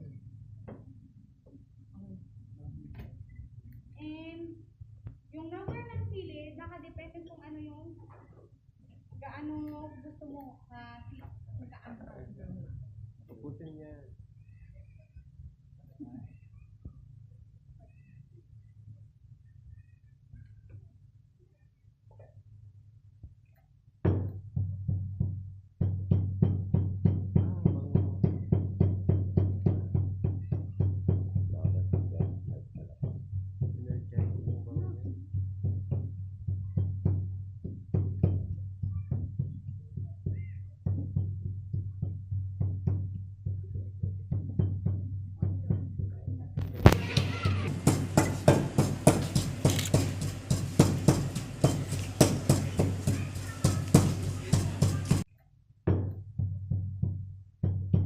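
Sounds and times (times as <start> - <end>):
low steady hum: 0.0 - 24.5
rhythmic knocking: 24.1 - 55.3
steady percussive beat: 24.1 - 55.3, 55.9 - 58.0.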